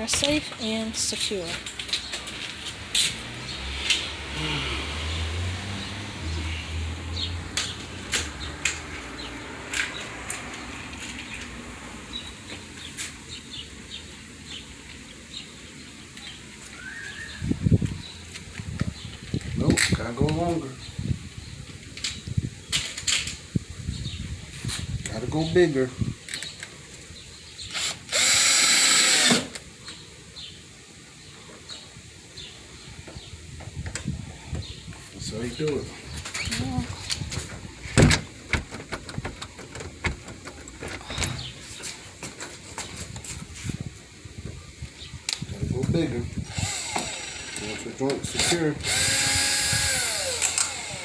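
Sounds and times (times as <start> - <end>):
power drill driving screw: 27.7 - 29.6, 46.5 - 51.0.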